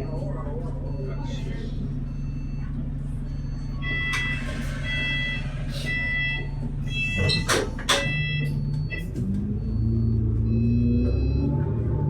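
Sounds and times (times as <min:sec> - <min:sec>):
bus engine: 0:00.0 - 0:12.0
short electronic beeps: 0:03.4 - 0:11.6.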